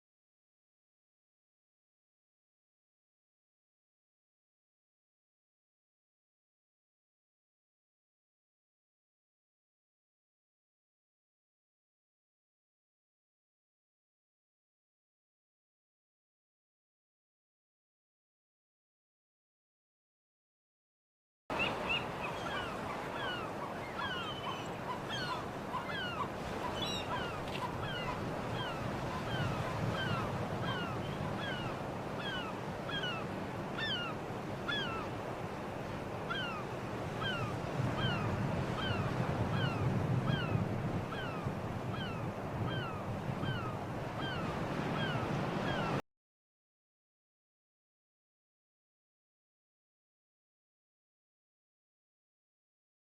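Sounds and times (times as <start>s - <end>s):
waves washing: 21.5s - 46.0s
wind: 21.5s - 46.0s.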